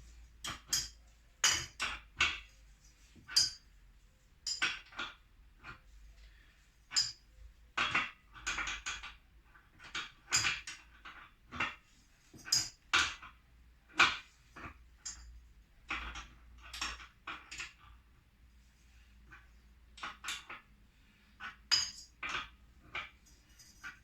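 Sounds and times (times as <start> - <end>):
metal tools clinking: 21.7 - 22.1, 23.2 - 24.0.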